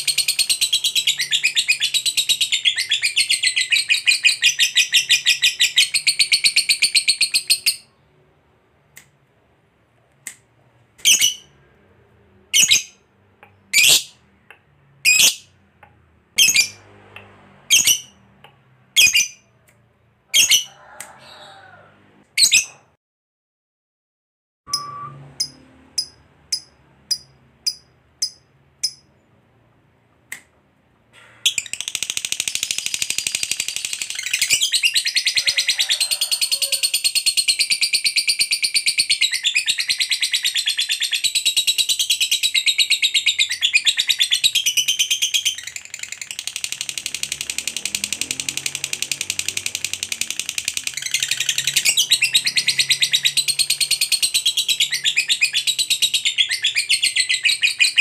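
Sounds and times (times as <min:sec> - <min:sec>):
lovebird chirping: 0:00.0 - 0:08.1, 0:11.0 - 0:11.6, 0:12.4 - 0:15.5, 0:16.4 - 0:16.8, 0:17.7 - 0:18.2, 0:19.0 - 0:19.5, 0:20.3 - 0:20.7, 0:24.7 - 0:29.4, 0:31.5 - 0:35.8, 0:48.2 - 0:58.0
lovebird rapid high trill: 0:24.7 - 0:29.1.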